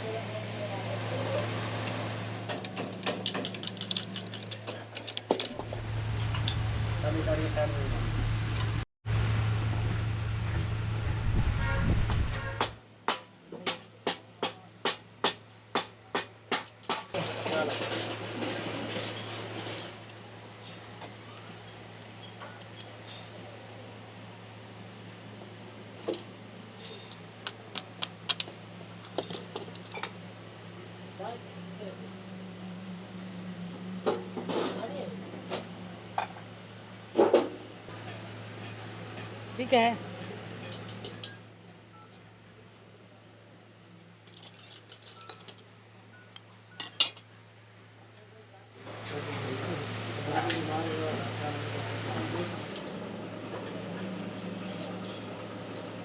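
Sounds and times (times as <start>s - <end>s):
low mechanical hum: 0.0s - 56.0s
steady low hum: 5.5s - 12.8s.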